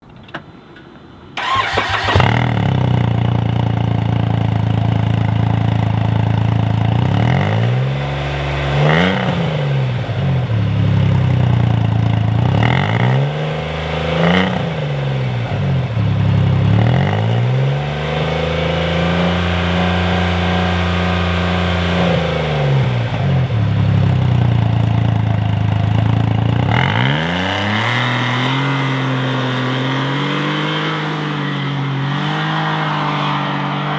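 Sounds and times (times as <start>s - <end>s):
engine idling and revving: 1.4s - 33.9s.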